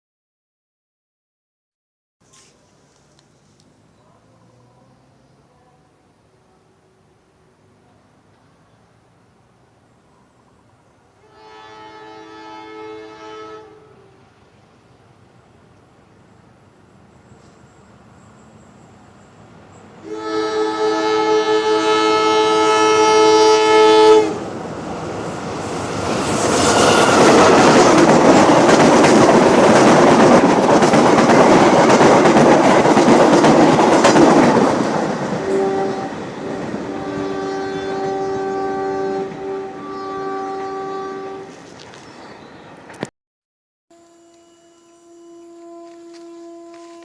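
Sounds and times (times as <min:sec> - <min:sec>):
locomotive air horn: 0:11.2 - 0:14.3, 0:20.0 - 0:24.5, 0:26.5 - 0:27.4, 0:35.4 - 0:41.6, 0:43.9 - 0:47.0
train rumbling and clattering past: 0:15.9 - 0:43.1.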